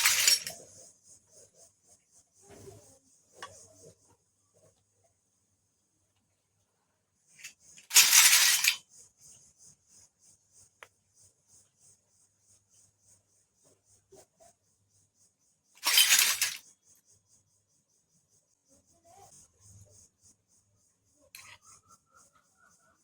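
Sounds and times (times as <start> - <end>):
plastic toy pieces clattering: 0.0 - 0.6, 7.7 - 8.8, 15.8 - 16.6, 21.4 - 21.6.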